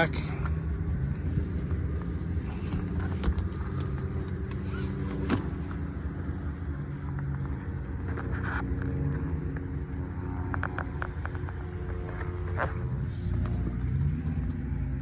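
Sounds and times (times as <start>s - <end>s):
engine idling: 0.0s - 8.9s.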